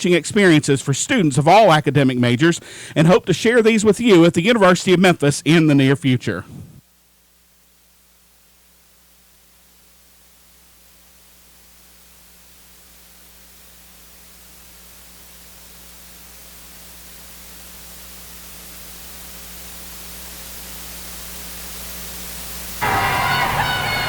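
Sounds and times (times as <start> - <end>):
steady hiss: 0.0 - 6.8
low electrical hum: 0.0 - 22.8.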